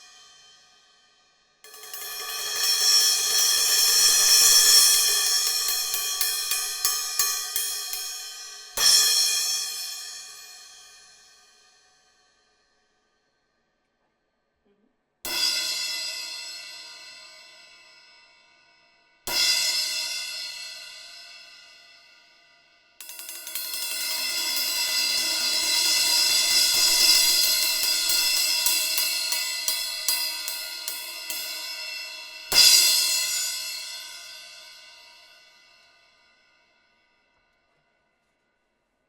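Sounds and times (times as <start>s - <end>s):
cymbal struck and ringing: 1.6s - 11.6s, 23.0s - 36.3s.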